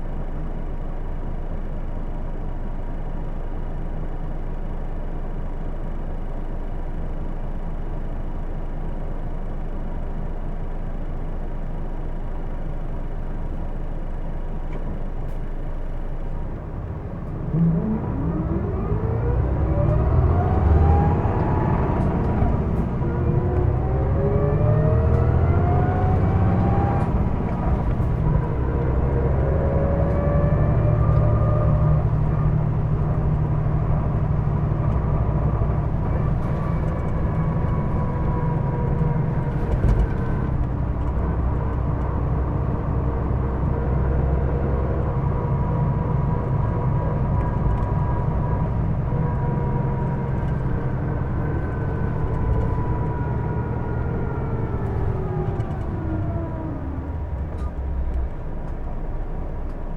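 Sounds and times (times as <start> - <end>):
bus diesel engine: 0.0 - 59.9
whining tones climbing with revs: 17.1 - 59.9.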